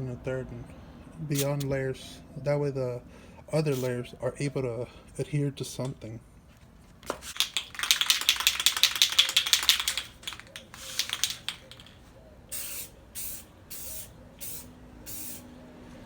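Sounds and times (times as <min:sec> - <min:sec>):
spray can hissing bursts: 0:01.4 - 0:01.7, 0:03.7 - 0:03.9, 0:07.1 - 0:11.9, 0:12.5 - 0:15.4
spray can ball rattling: 0:07.0 - 0:15.4.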